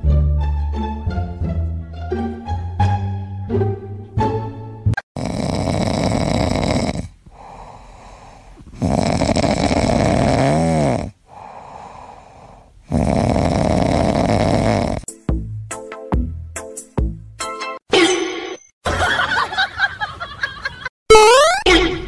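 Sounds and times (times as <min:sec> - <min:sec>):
loud snoring: 0:05.0 - 0:15.1
quiet breathing: 0:06.9 - 0:13.4.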